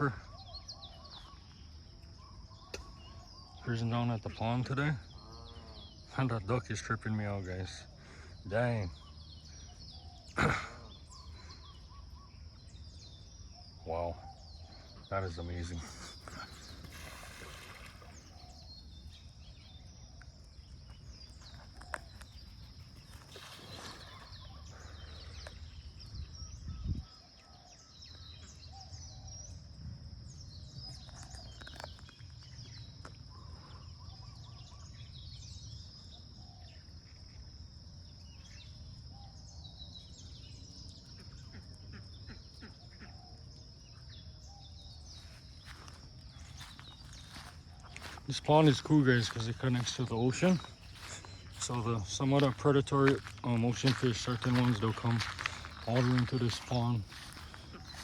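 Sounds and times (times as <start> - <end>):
small birds chirping: 0.0 - 58.0
wind rumble on microphone: 25.2 - 27.3.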